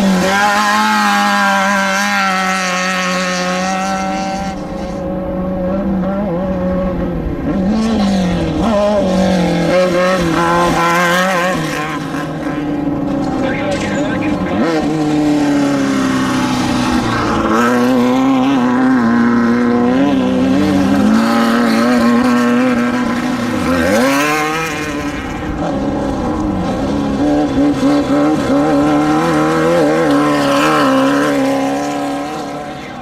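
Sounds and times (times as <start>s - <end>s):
race vehicle engines revving: 0.0s - 33.0s
vehicle passing by: 0.0s - 33.0s.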